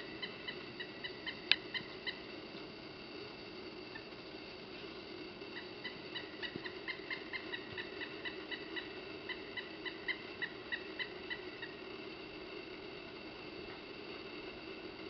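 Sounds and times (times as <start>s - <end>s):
woodpecker calling: 0.0s - 2.3s, 5.5s - 11.9s.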